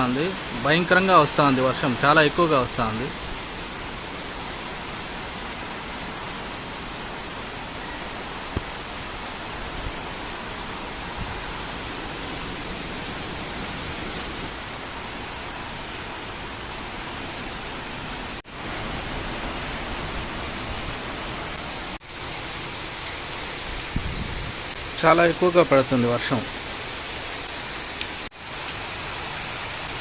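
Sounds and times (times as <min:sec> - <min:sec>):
heavy rain pouring: 0:00.0 - 0:30.0.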